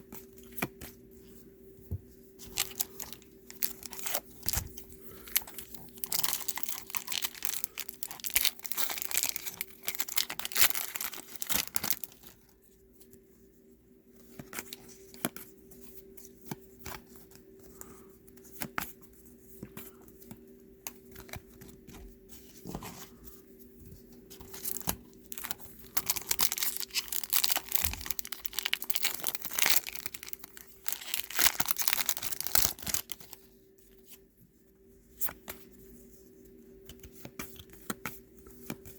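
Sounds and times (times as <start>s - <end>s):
wrappers tearing and crinkling: 2.5s - 12.5s, 24.5s - 33.4s.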